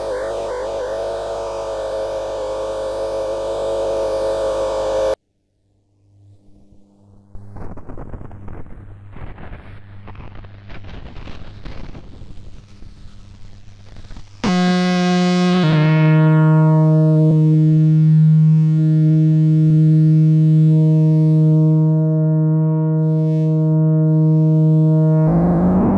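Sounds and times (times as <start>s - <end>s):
buzzy synth tone: 0.0s - 5.2s, 14.4s - 25.9s
irregular crackling with low hum: 6.0s - 14.6s.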